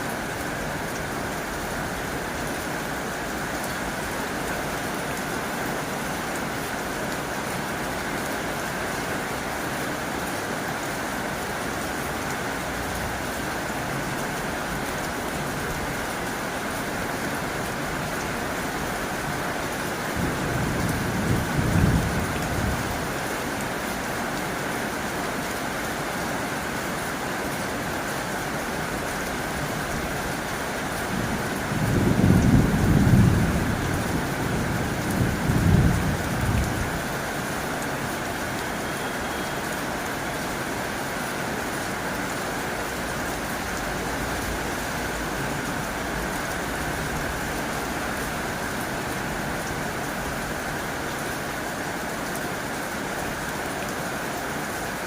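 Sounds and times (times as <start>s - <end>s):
heavy rain on a tin roof: 0.0s - 55.0s.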